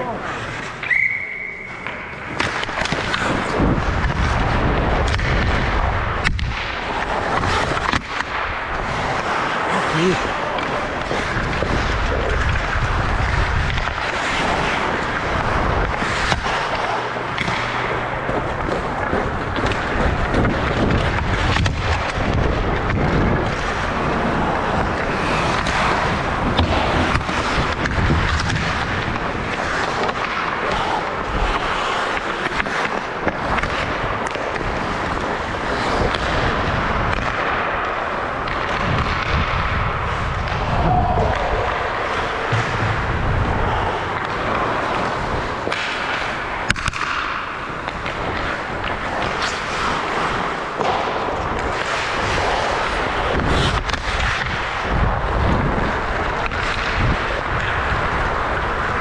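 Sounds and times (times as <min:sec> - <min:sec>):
skates scraping on ice: 0:00.0 - 0:59.0
hockey sticks clacking: 0:00.1 - 0:05.6, 0:06.2 - 0:39.5, 0:41.3 - 0:59.0
puck being hit: 0:00.7 - 0:05.6, 0:10.2 - 0:36.4, 0:42.0 - 0:54.9.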